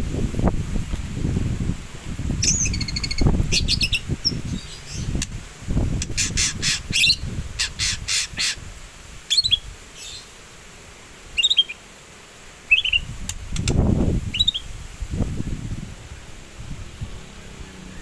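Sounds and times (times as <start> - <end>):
bird chattering and chirping: 2.4 - 5.4, 6.0 - 8.6, 9.3 - 10.3, 11.4 - 11.8, 12.7 - 14.7.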